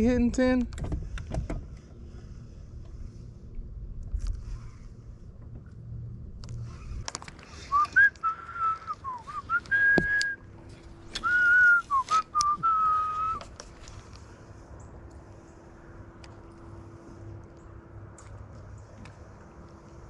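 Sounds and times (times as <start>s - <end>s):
low hum: 0.0s - 20.0s
person whistling a tune: 7.7s - 10.4s, 11.2s - 13.4s.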